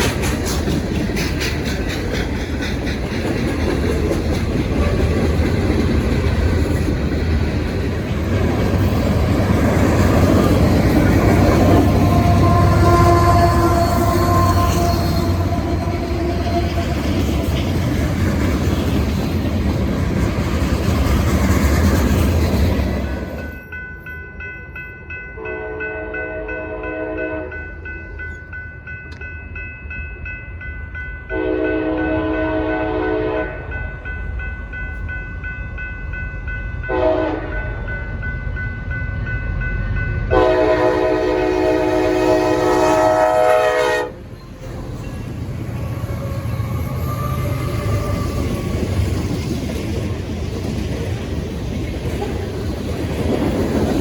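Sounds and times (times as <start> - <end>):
freight train rumbling: 0.0 - 54.0
locomotive air horn blasts: 11.2 - 17.2, 25.5 - 27.6, 31.3 - 33.6, 36.9 - 37.5, 40.3 - 44.2.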